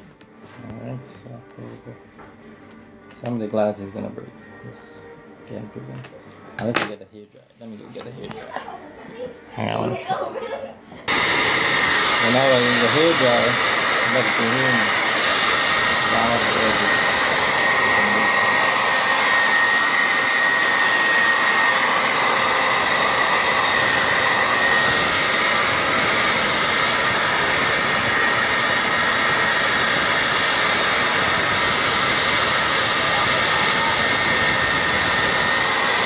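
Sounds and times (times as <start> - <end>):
hair dryer blowing: 11.0 - 36.0.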